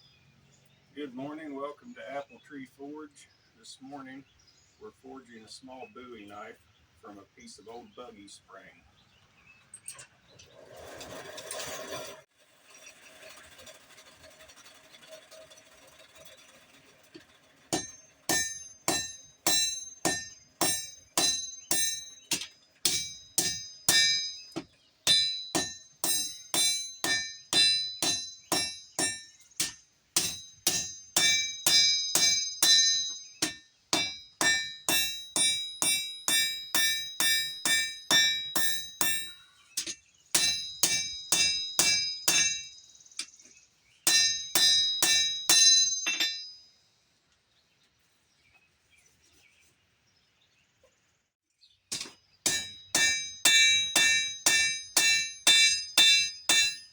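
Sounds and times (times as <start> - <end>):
hammer striking anvil: 17.7 - 43.3, 44.1 - 46.7, 51.9 - 56.9.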